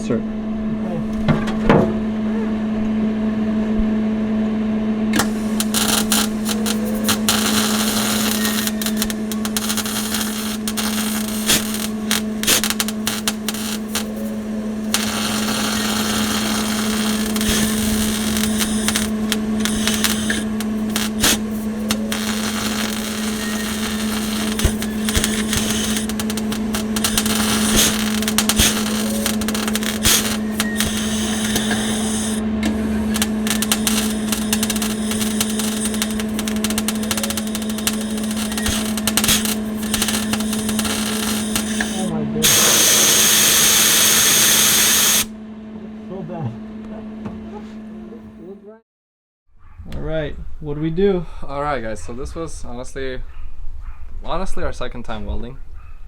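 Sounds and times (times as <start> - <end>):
electrical hum: 0.0 - 48.7
welder arc crackling: 0.9 - 4.1, 5.0 - 45.4.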